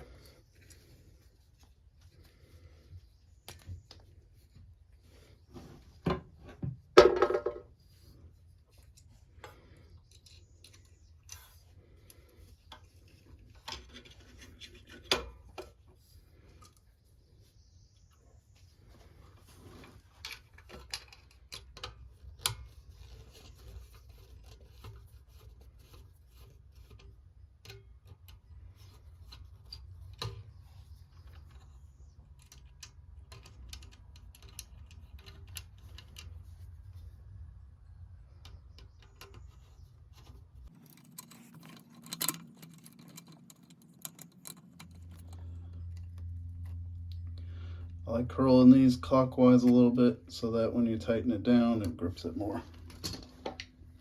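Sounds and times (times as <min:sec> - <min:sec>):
metal clicks and scrapes of hand tools: 0:08.7 - 0:16.9, 0:19.2 - 0:37.0, 0:38.3 - 0:47.3.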